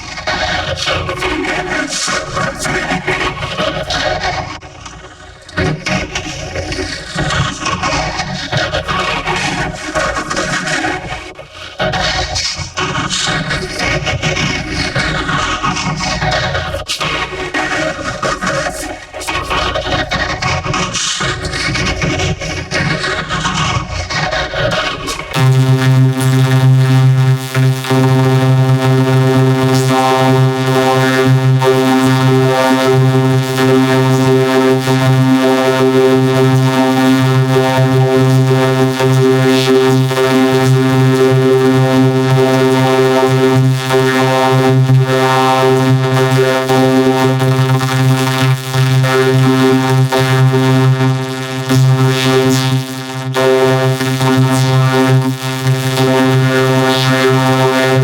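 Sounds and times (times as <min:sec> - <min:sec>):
loud droning tone: 0:25.2 - 0:58.0.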